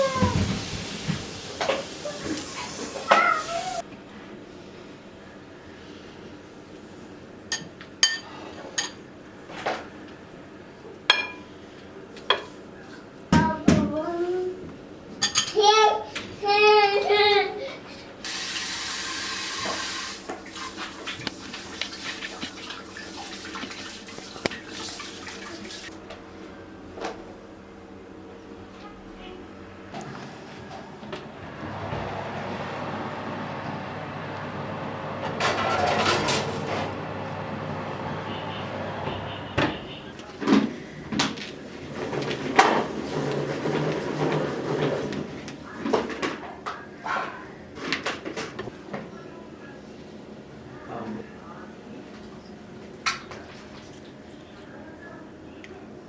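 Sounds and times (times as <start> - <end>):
kitchen tap running: 0.0 - 3.8, 18.2 - 26.0
objects knocking and clattering: 35.4 - 36.9, 40.4 - 46.4.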